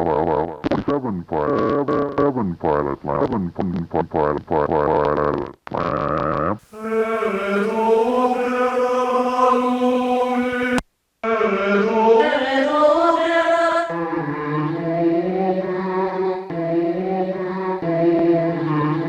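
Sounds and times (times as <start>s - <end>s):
looped voice sample drone: 6.7s - 10.8s.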